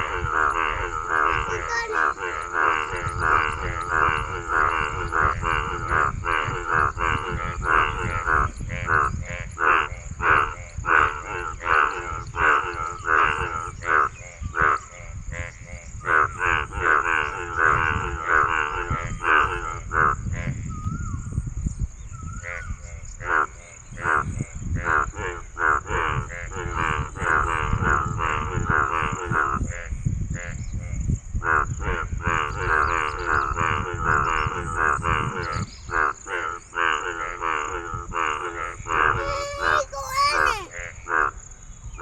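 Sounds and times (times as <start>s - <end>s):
frog croaking: 0.0s - 20.3s, 31.4s - 41.4s.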